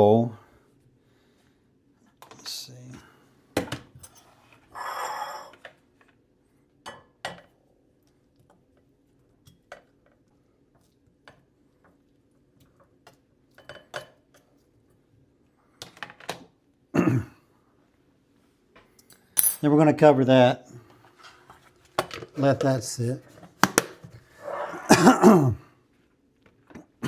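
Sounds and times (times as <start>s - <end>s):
utensil clinking against dishes: 19.4s - 19.6s.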